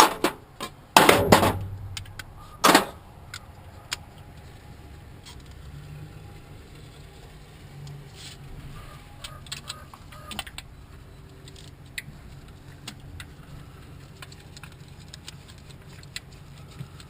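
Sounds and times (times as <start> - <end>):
steady low hum: 0.8 - 5.7.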